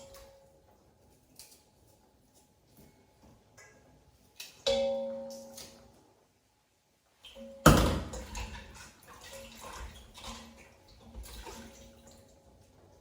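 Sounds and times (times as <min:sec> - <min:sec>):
water splashing: 0:07.7 - 0:12.3.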